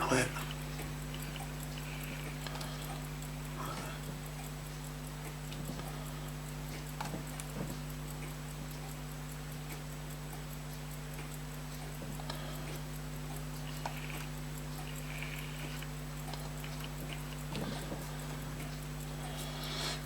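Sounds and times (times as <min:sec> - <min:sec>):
faint even ticking: 0:00.0 - 0:20.0
small clicks: 0:06.7 - 0:20.0.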